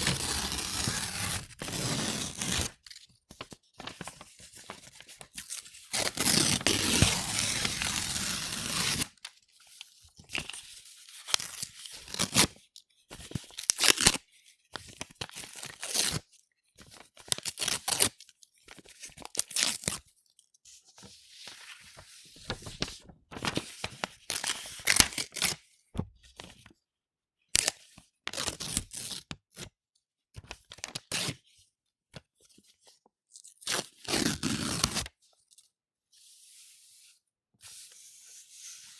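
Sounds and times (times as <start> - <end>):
paper tearing by hand: 0.0 - 2.8, 5.9 - 9.1, 34.1 - 35.1.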